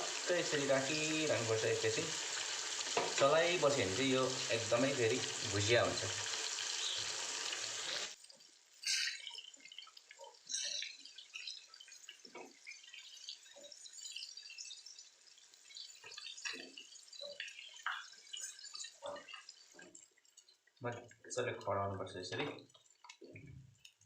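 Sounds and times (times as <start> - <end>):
fish frying in hot oil: 0.0 - 21.3, 22.5 - 24.0
oil popping and crackling: 0.0 - 21.5, 22.3 - 24.0.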